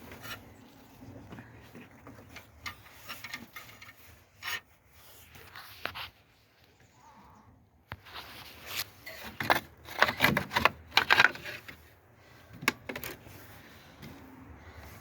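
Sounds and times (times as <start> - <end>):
hand tools scraping car parts: 2.0 - 4.8, 8.1 - 14.1.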